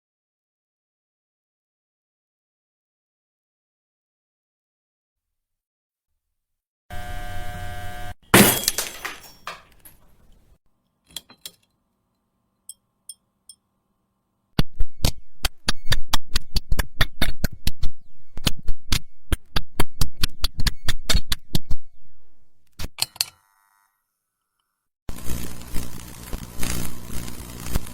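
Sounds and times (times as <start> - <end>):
glass crash ringing: 8.3 - 10.1.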